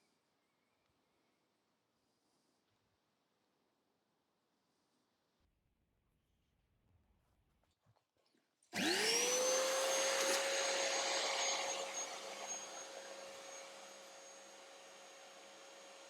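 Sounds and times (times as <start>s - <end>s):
vacuum cleaner motor whine: 8.7s - 16.0s.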